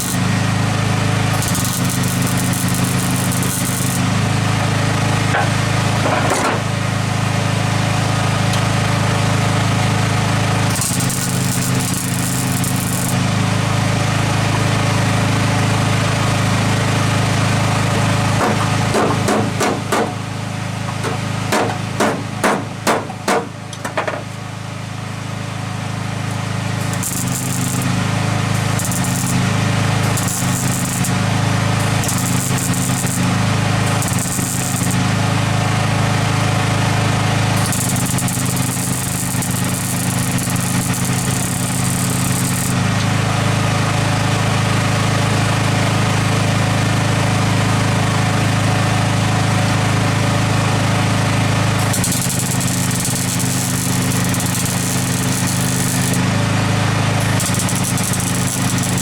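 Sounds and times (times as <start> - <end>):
arc welding crackle: 0.0 - 14.7, 25.9 - 44.6, 50.1 - 59.0
generator engine running: 0.0 - 22.8, 23.6 - 59.0.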